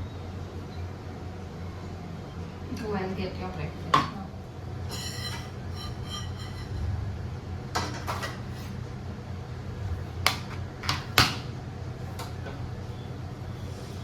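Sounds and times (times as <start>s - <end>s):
steady low hum: 0.0s - 14.0s
dishes and utensils clinking: 3.9s - 7.0s, 7.7s - 8.8s.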